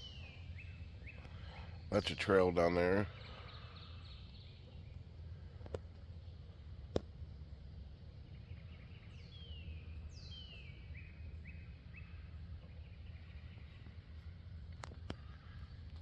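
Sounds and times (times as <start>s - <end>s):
birds whistling and chirping: 0.0s - 5.5s, 8.2s - 14.0s
steady low rumble: 0.0s - 16.0s.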